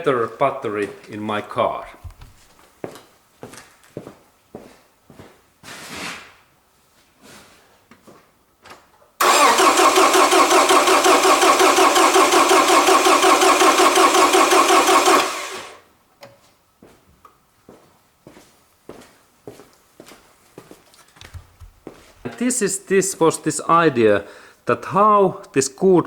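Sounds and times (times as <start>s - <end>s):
starter motor cranking engine: 9.2s - 15.8s.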